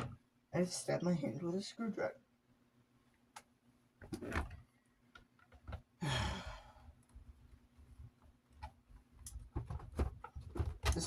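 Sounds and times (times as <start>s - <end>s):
man sighing heavily: 6.0s - 6.8s.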